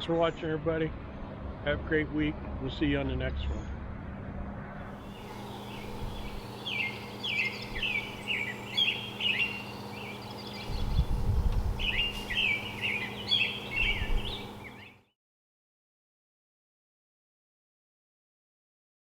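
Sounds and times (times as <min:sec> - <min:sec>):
faint steady hum: 0:05.0 - 0:15.0
small birds chirping: 0:05.0 - 0:15.1.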